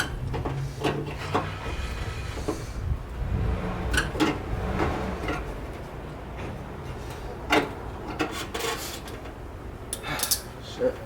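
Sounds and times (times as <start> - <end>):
metal parts rubbing and scraping: 0.0 - 3.0, 8.1 - 9.2.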